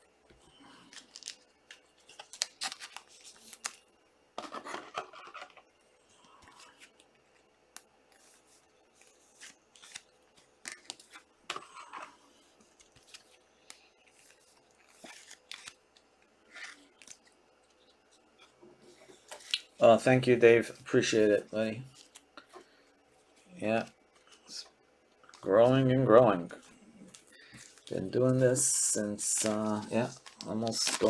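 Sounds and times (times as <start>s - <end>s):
foil packaging crinkling: 0.8s - 3.8s, 29.2s - 31.0s.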